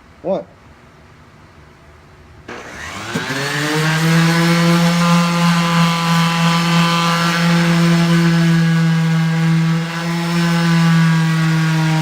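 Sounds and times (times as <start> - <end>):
power tool motor whining: 2.5 - 12.0.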